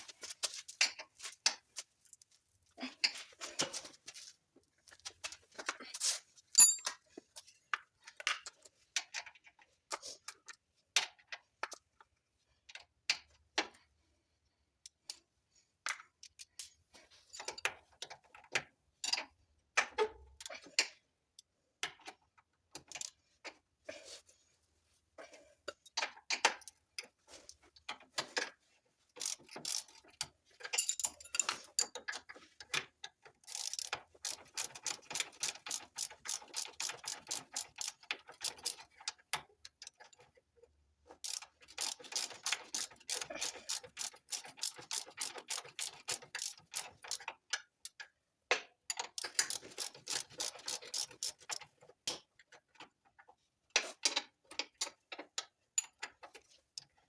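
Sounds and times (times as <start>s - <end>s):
ratchet wrench clicking: 29.2s - 30.0s, 33.4s - 38.9s, 41.2s - 48.0s, 49.1s - 51.6s.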